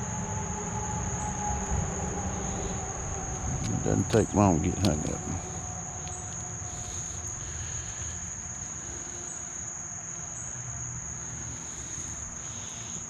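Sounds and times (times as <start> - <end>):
low rushing background: 0.0 - 12.4
insect chorus drone: 0.0 - 13.0.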